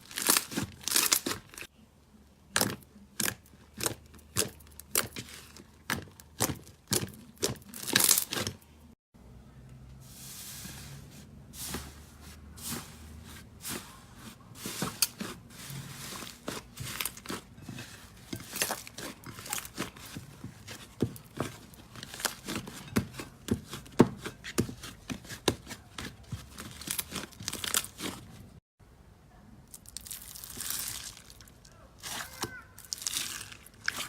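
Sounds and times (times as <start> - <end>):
slime crackling and popping: 0.0 - 1.7, 2.6 - 8.5, 29.7 - 34.0.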